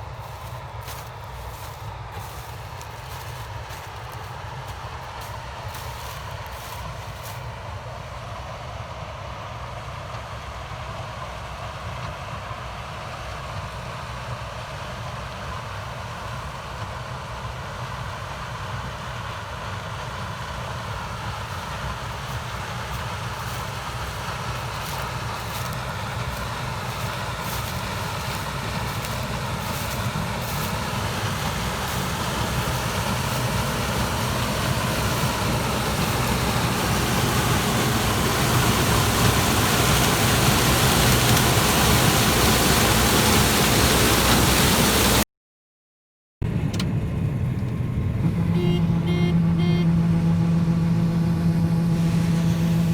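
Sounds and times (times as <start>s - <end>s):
farm machinery droning: 0.0s - 7.8s, 19.0s - 45.2s, 46.5s - 52.9s.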